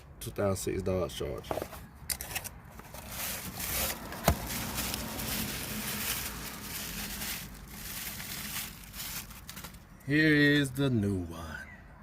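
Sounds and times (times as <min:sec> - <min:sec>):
rustling handling noise: 0:01.4 - 0:09.9.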